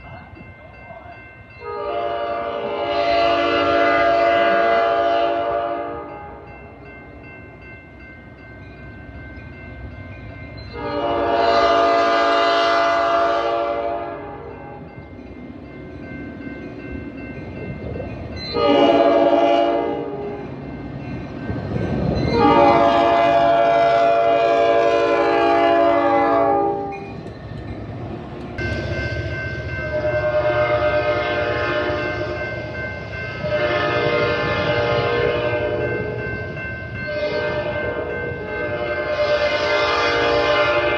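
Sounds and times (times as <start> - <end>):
bell ringing steadily: 0.0 - 1.9, 6.0 - 10.8, 14.4 - 18.6, 20.3 - 22.7, 28.6 - 33.7, 35.7 - 39.1
train rumble: 0.0 - 40.9
locomotive air horn blasts: 1.6 - 6.4, 10.7 - 14.6, 18.5 - 20.4, 22.3 - 27.0, 29.8 - 32.4, 33.4 - 36.0, 37.0 - 40.9.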